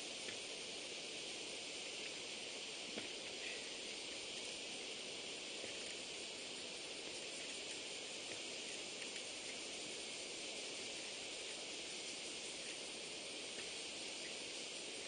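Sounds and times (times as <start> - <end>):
outdoor background hiss: 0.0 - 15.0.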